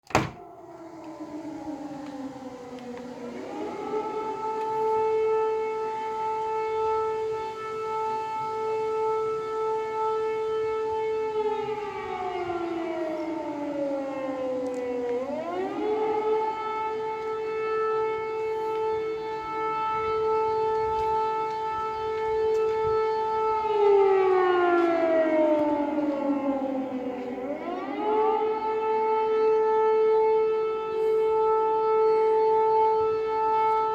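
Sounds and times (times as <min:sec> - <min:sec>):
air-raid siren wailing: 0:00.0 - 0:33.9.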